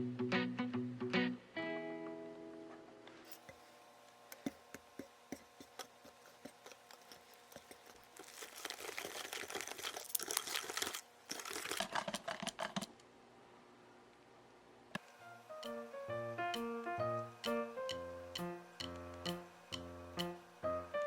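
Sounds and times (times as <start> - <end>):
crinkling and rustling: 5.4 - 13.0.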